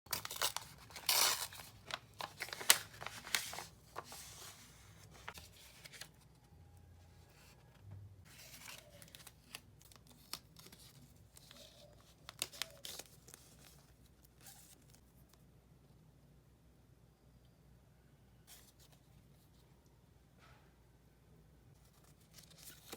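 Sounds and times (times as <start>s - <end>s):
wrapping being torn and crinkled: 0.1s - 4.6s, 8.3s - 15.2s.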